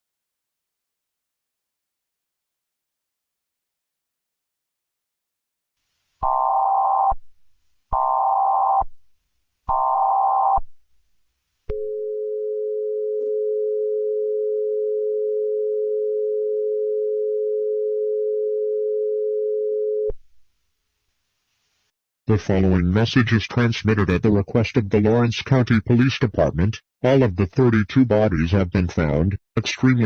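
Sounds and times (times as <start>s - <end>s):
two-tone attention alarm: 6.2s - 7.2s, 8.0s - 8.8s, 9.7s - 10.6s.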